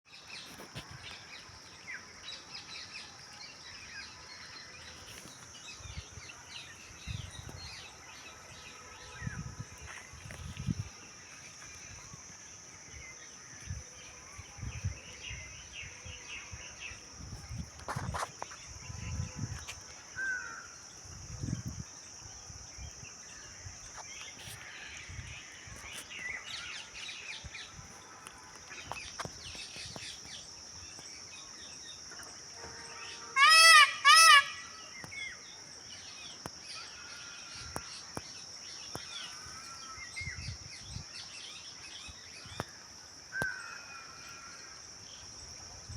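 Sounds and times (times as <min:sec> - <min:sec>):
high insect drone: 0:00.2 - 0:45.9
peacock calling loudly: 0:33.2 - 0:34.9.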